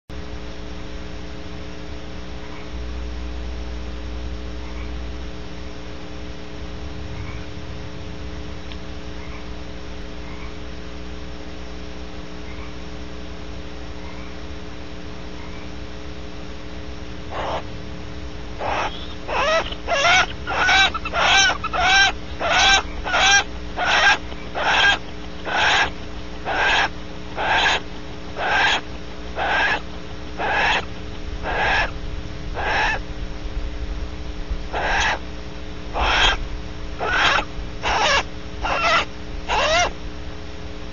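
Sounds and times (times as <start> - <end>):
steady electrical hum: 0.1 - 40.9
barn owl wheeze calls: 17.3 - 17.7, 18.5 - 32.0, 32.6 - 33.1, 34.7 - 35.3, 35.9 - 36.4, 37.0 - 40.0.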